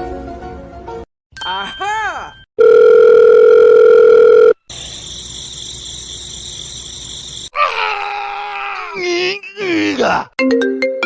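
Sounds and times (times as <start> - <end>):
high electronic ringing buzz: 2.6 - 7.5.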